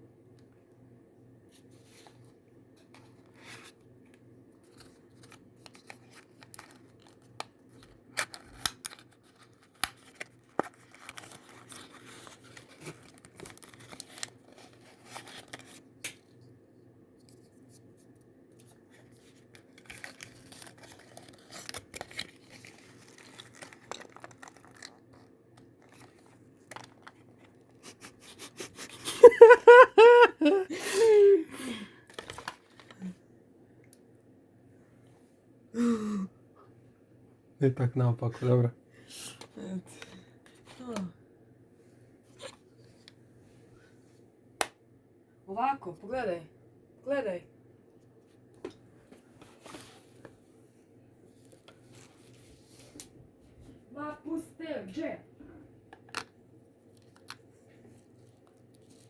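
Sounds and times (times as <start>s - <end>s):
packaging tearing and crinkling: 5.2s - 15.8s, 19.4s - 27.9s.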